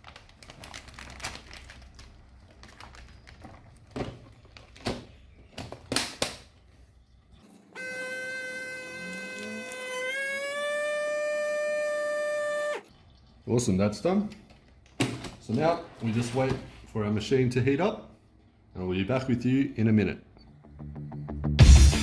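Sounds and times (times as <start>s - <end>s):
plastic bag crinkling: 0.0s - 4.9s
held horn-like musical note: 7.7s - 12.8s.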